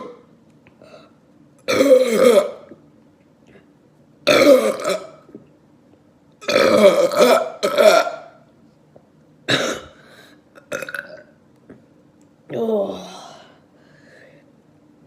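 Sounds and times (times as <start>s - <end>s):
man burping loudly: 1.7s - 2.7s, 4.2s - 5.2s, 6.4s - 8.3s, 10.6s - 11.3s.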